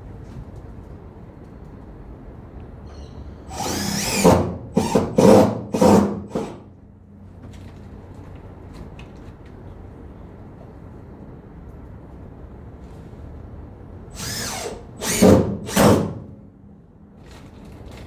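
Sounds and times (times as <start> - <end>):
power drill bursts: 3.5 - 6.6, 14.1 - 16.4.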